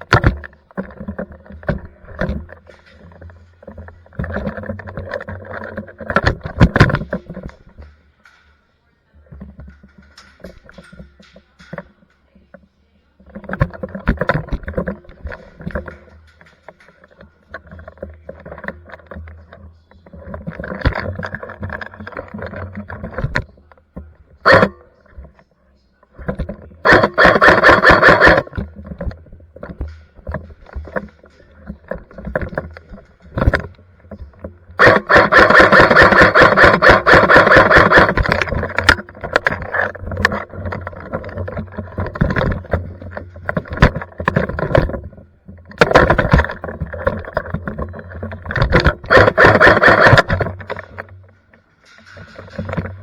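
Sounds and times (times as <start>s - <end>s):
airsoft gun firing bursts: 24.5s - 24.7s, 26.8s - 28.6s, 34.8s - 39.0s, 48.8s - 50.4s.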